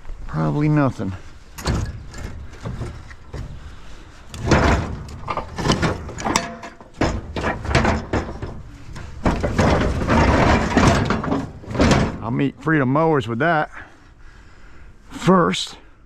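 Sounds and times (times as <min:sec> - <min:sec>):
scrap metal clanking and thumping: 0:01.4 - 0:12.6.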